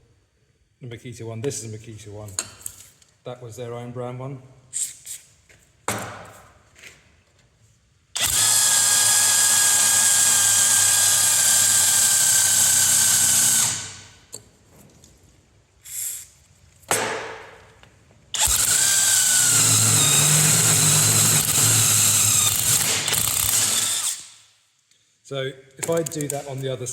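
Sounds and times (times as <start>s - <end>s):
impact wrench whining: 8.2s - 14.1s, 18.3s - 24.4s.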